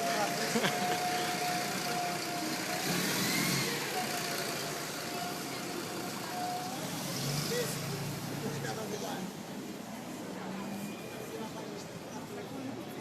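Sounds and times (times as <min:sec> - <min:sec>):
vehicle engine running: 0:00.0 - 0:08.6
city street traffic: 0:00.0 - 0:13.0.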